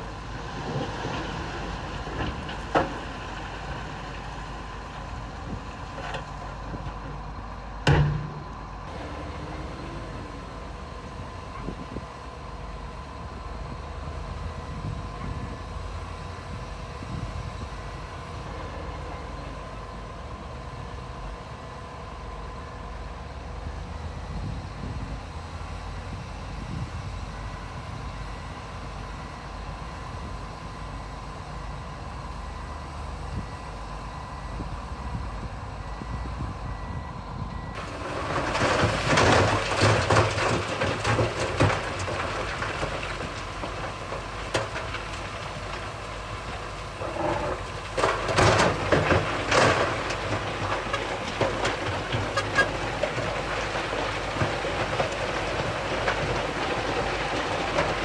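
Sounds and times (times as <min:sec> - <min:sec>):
diesel engine running: 0:00.0 - 0:58.0
stones clattering and crunching: 0:37.8 - 0:58.0.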